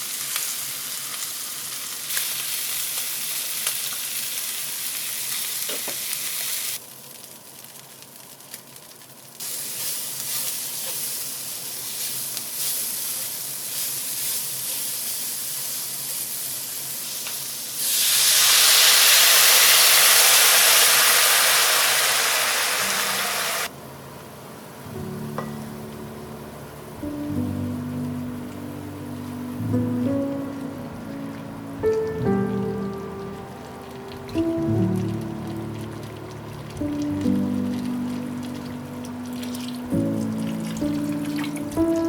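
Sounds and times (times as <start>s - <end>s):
beef sizzling in a pan: 0.0s - 23.7s, 29.2s - 42.0s
loud steady hiss: 9.4s - 23.8s.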